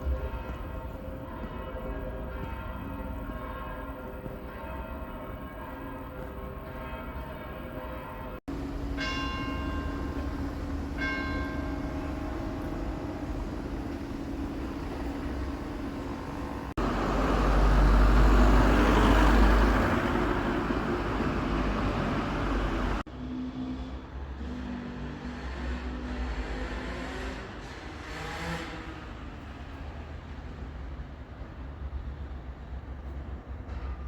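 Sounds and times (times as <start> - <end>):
church bell tolling: 0.0 - 18.0.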